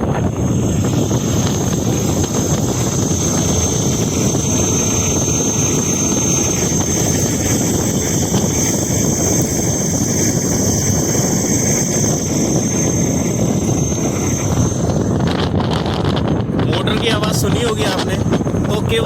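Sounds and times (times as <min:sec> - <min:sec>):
wind noise on microphone: 0:00.0 - 0:19.0
electric motor high-pitched whistle: 0:01.4 - 0:16.4.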